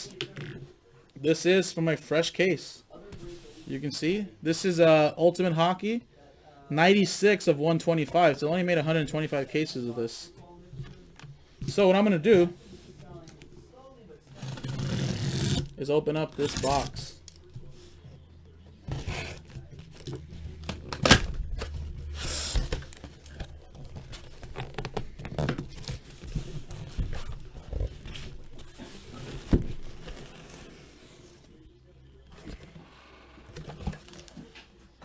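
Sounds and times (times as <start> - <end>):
cardboard tearing and crinkling: 14.3 - 15.7.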